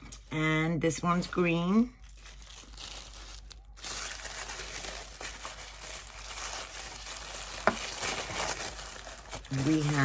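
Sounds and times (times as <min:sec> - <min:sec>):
wrapping crinkling and rustling: 0:00.1 - 0:10.0.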